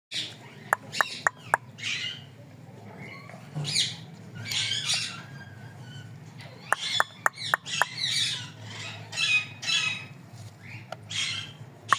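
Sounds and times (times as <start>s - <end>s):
parrot chirps: 0.8s - 2.2s, 6.6s - 10.0s.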